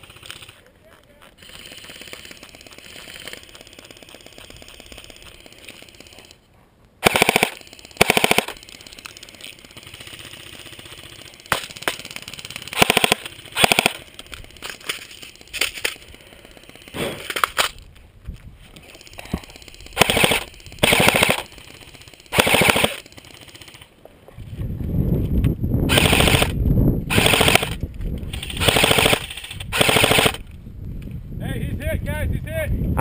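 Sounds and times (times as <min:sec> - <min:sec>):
airsoft guns firing bursts: 0:00.0 - 0:00.6, 0:01.4 - 0:06.3, 0:07.0 - 0:17.7, 0:18.9 - 0:23.9, 0:25.9 - 0:30.4.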